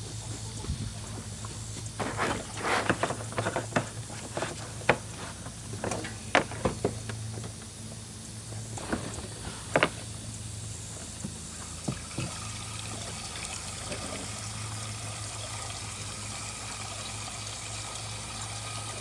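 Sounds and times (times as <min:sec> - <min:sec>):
steady low hum: 0:00.0 - 0:19.0
clicks and knocks of gas can: 0:02.0 - 0:07.8, 0:08.8 - 0:10.2.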